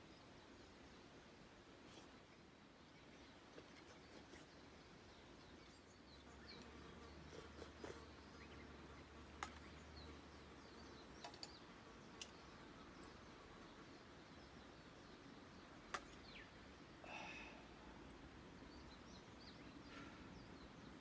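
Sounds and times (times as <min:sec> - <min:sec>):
small clicks: 0:11.2 - 0:11.6.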